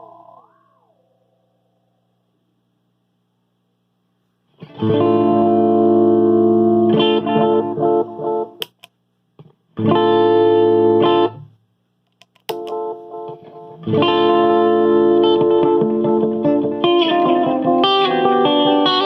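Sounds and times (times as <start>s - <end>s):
distorted electric guitar chords: 0.0s - 2.1s, 4.6s - 8.6s, 12.5s - 19.0s.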